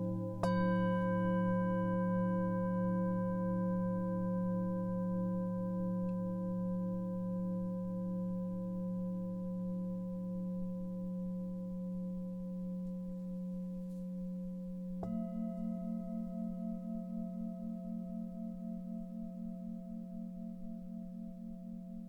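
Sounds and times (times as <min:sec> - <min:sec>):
singing bowl ringing: 0:00.0 - 0:07.6.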